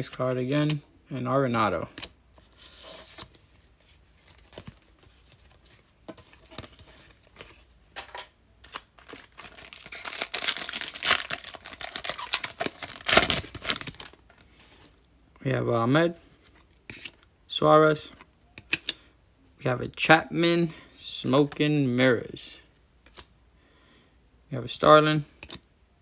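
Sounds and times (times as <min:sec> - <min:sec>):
foil wrapper tearing and crinkling: 0:08.7 - 0:14.2.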